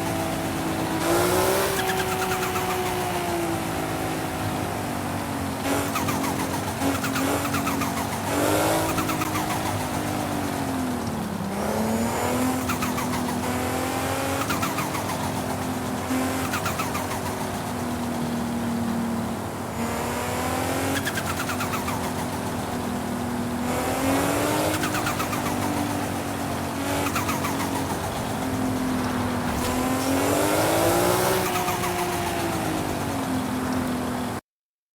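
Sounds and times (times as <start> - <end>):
turbo fluttering: 0.0 - 4.4, 5.7 - 11.0, 12.2 - 19.1, 19.7 - 33.9
turbocharged engine running: 0.0 - 34.4
turbocharged engine winding down: 23.7 - 33.6.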